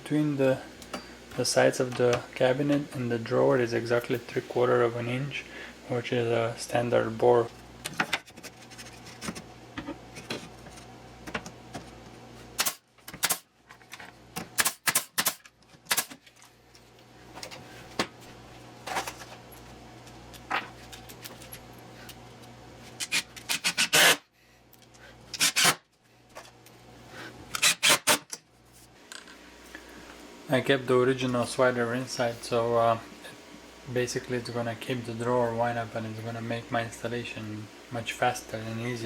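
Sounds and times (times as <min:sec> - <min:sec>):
steady low hum: 0:00.0 - 0:39.0.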